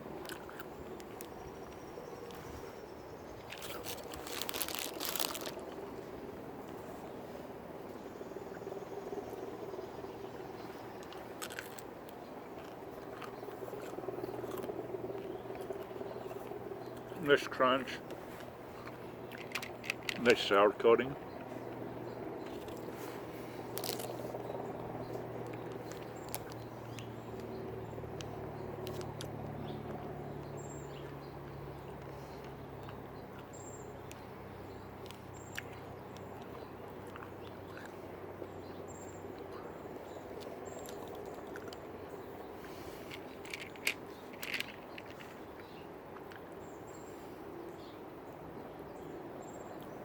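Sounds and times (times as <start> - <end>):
wet chewing sounds: 0.0 - 2.5, 3.3 - 6.9, 10.3 - 17.2, 18.0 - 20.4, 21.2 - 47.0
steady low hum: 0.0 - 50.0
chewing hard gummy candy: 0.2 - 1.3, 3.4 - 6.0, 11.0 - 17.2, 23.6 - 24.6, 35.1 - 38.5
candy shell crunching: 3.5 - 5.9, 11.0 - 11.9, 23.7 - 24.2.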